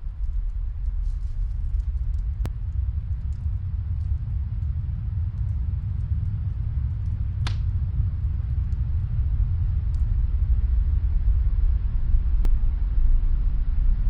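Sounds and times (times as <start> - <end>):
snowstorm wind rumble: 0.0 - 14.0
fireplace crackling: 0.1 - 11.0.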